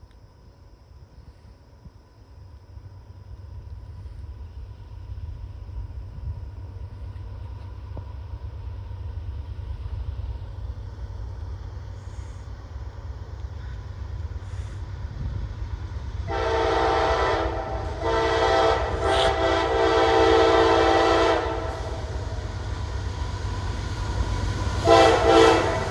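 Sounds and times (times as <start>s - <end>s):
low locomotive rumble: 0.0s - 25.9s
locomotive air horn: 16.3s - 22.3s, 24.8s - 25.9s.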